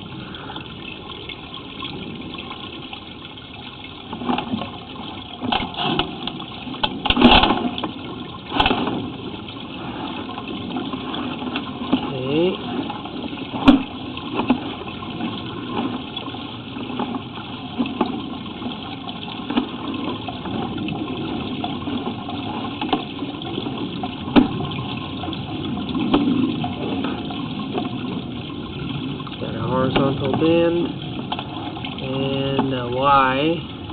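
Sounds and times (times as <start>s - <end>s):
water gurgling in drain: 0.0s - 33.9s
sharp knocks and clicks: 5.4s - 9.1s.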